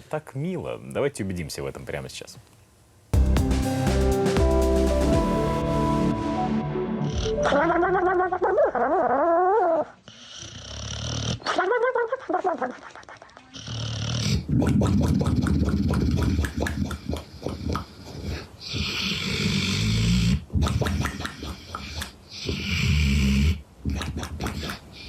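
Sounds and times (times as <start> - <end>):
pet snoring: 9.6 - 11.5, 13.4 - 20.5, 21.8 - 24.8.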